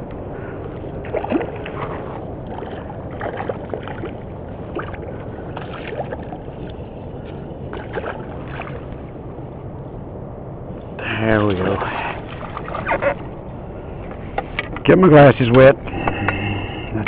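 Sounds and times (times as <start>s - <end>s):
wind noise: 0.0s - 17.0s
fish splashing at water surface: 1.0s - 6.8s.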